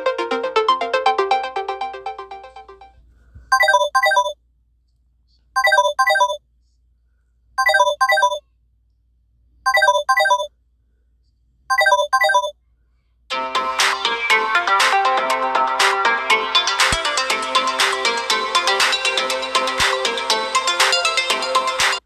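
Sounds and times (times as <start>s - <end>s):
ringtone music: 0.0s - 2.8s, 3.5s - 4.3s, 5.6s - 6.4s, 7.6s - 8.4s, 9.7s - 10.5s, 11.7s - 12.5s, 13.3s - 22.0s
electronic phone ringtone: 3.5s - 4.3s, 5.6s - 6.4s, 7.6s - 8.4s, 9.7s - 10.5s, 11.7s - 12.5s.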